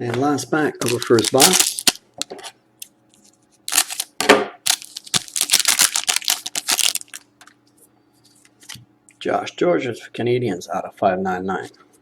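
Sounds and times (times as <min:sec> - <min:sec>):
foil wrapper crinkling: 0:00.8 - 0:07.5.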